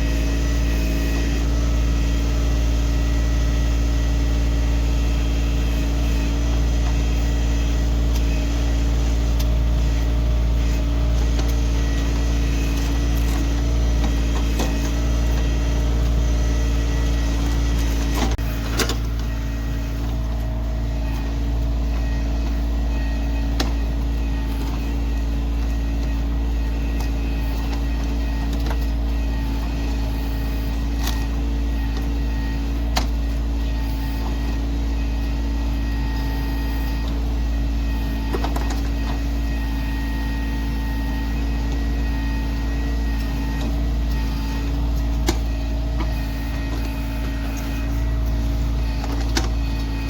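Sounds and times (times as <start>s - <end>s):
tractor diesel engine running: 0.0s - 50.0s
backhoe clicks and knocks: 38.2s - 39.2s, 48.9s - 50.0s.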